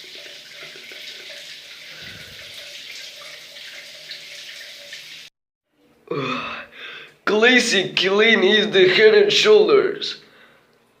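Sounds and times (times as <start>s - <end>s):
tap water running: 0.0s - 5.3s
person speaking: 6.1s - 10.3s.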